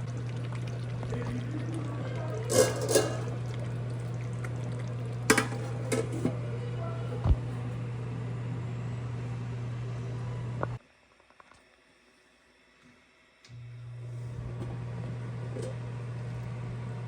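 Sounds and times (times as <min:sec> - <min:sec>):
low kitchen hum: 0:00.0 - 0:17.0
utensils clinking against pan: 0:02.4 - 0:03.6.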